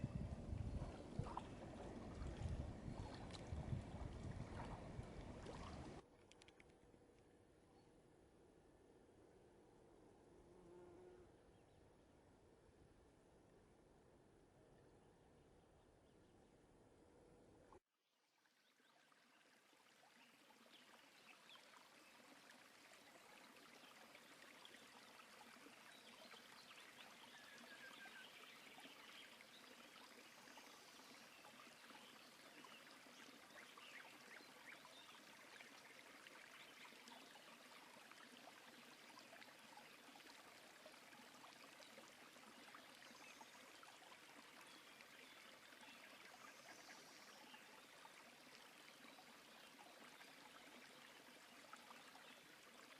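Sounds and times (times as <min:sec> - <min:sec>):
flowing river water: 0:00.0 - 0:06.6, 0:18.2 - 0:52.9.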